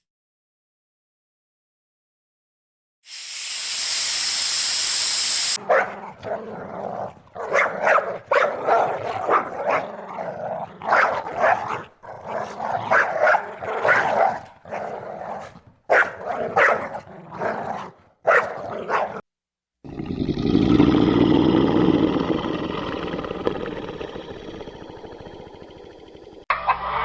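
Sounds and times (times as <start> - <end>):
dog barking: 5.6 - 19.2.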